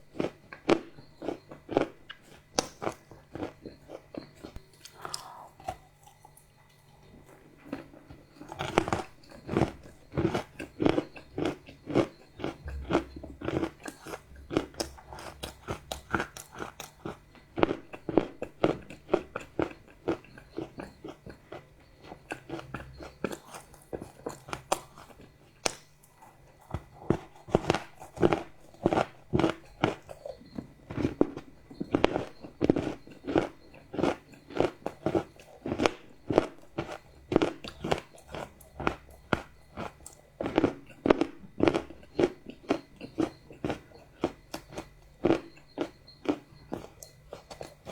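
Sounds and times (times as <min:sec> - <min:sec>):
chewing crunchy chocolate: 0:00.0 - 0:47.9.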